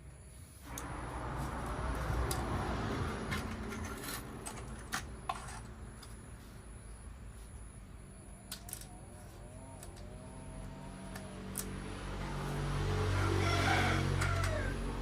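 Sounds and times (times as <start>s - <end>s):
plastic toy pieces clicking: 8.5s - 8.9s.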